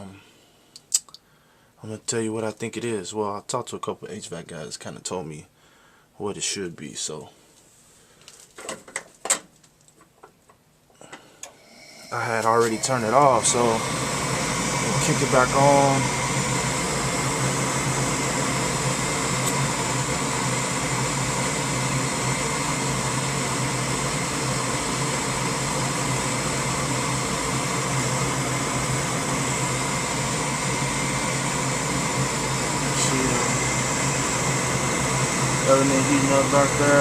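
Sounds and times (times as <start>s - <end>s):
furnace fan humming: 10.6s - 37.0s.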